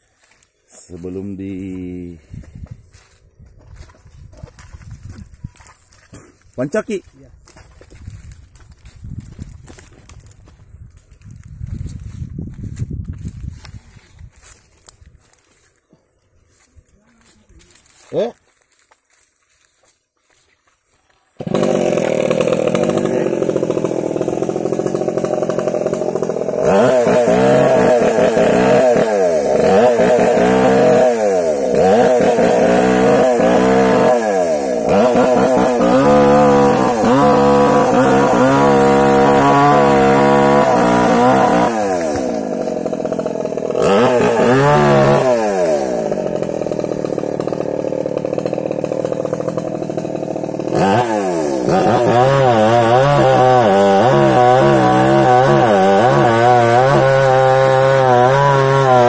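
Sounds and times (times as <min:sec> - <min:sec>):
chainsaw cutting tree: 0:21.3 - 0:59.0.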